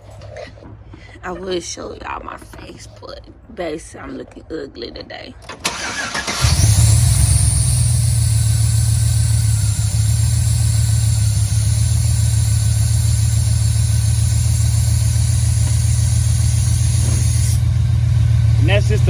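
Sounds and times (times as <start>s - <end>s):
car engine idling: 5.5s - 19.0s
vacuum leak hiss: 6.7s - 19.0s.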